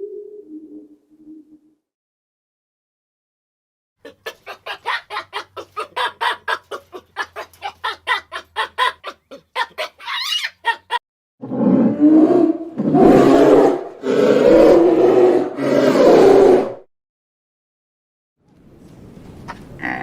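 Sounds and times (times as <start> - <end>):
chicken clucking rapidly: 4.0 - 11.0
chicken squawk: 4.0 - 11.0.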